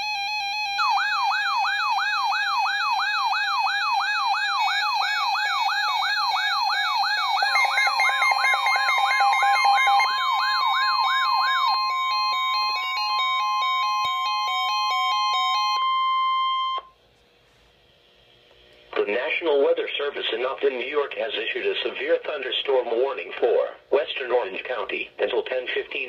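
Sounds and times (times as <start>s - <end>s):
electronic siren sweeping up: 0.0s - 16.9s
steady high alert tone: 0.2s - 16.9s
stepping electronic tones: 4.6s - 14.6s.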